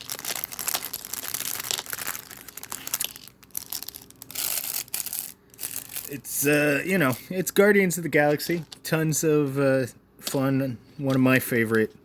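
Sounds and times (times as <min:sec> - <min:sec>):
small plastic pieces clicking: 0:00.0 - 0:06.2
plastic packaging crinkling: 0:00.0 - 0:07.2.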